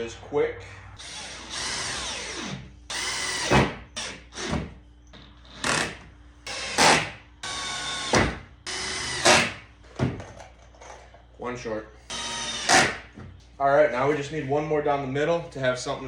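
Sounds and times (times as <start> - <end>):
drill driving screws into wood: 1.0 - 4.7, 5.4 - 9.6, 12.1 - 13.1.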